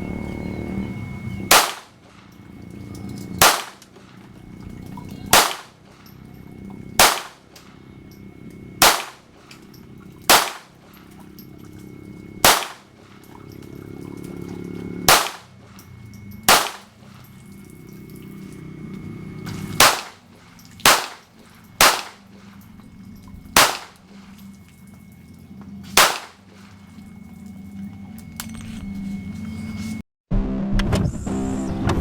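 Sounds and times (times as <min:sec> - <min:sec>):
pistol shots: 0:01.5 - 0:02.3, 0:03.4 - 0:04.1, 0:05.3 - 0:05.9, 0:07.0 - 0:07.6, 0:08.8 - 0:09.3, 0:10.3 - 0:11.0, 0:12.4 - 0:13.0, 0:15.1 - 0:15.6, 0:16.5 - 0:17.0, 0:19.5 - 0:22.6, 0:23.6 - 0:24.2, 0:25.9 - 0:26.7.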